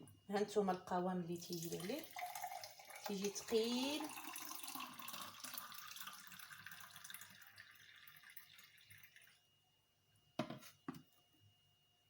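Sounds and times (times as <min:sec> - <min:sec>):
thick juice trickling: 0:01.4 - 0:09.4.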